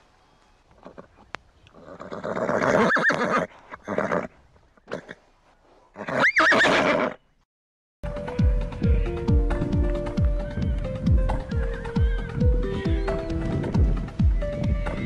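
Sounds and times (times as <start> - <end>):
horse whinnying: 1.7 - 5.2, 6.0 - 7.2, 10.2 - 13.4, 14.2 - 15.0.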